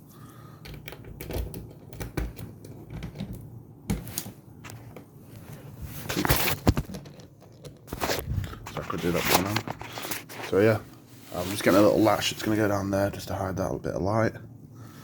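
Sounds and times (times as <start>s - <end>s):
scraping rustle: 7.8s - 12.5s.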